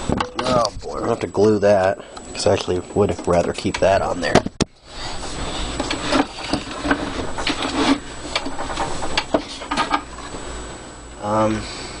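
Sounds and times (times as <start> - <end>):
rubbing and scraping: 3.0 - 10.6.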